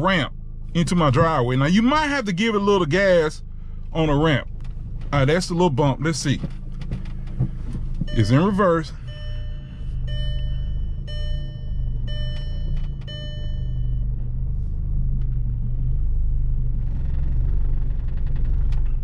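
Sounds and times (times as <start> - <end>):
car engine running at low revs: 0.0 - 19.0
reversing chime beeping: 8.0 - 14.5.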